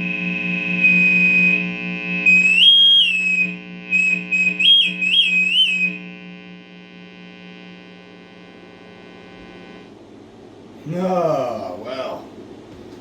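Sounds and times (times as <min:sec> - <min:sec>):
high electronic tone tune: 0:00.0 - 0:06.2
low electrical hum: 0:00.0 - 0:13.0.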